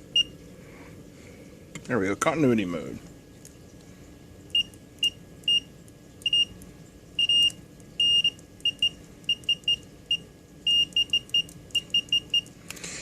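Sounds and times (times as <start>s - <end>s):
multimeter continuity beeps: 0.1s - 0.4s, 4.5s - 6.6s, 7.2s - 12.6s.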